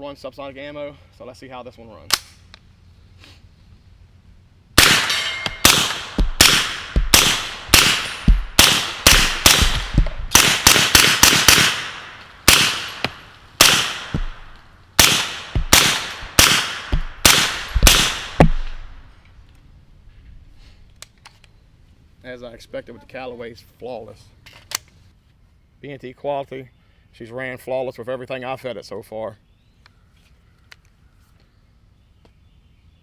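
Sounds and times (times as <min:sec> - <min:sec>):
suppressed gunshots: 0:04.8 - 0:19.1.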